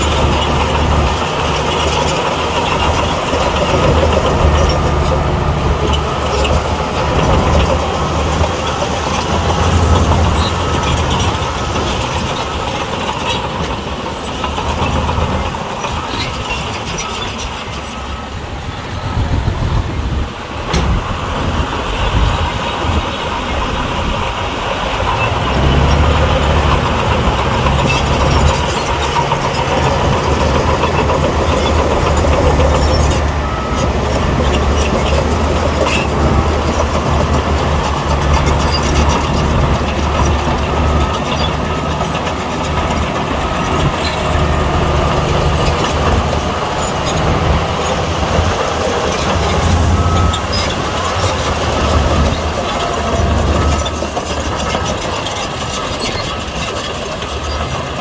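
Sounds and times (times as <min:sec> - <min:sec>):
heavy diesel machinery engine: 0:00.0 - 0:58.0.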